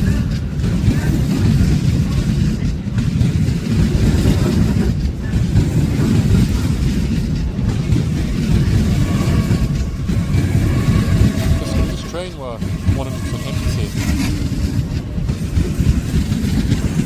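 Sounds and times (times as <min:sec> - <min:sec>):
train rumbling on tracks: 0:00.0 - 0:17.0.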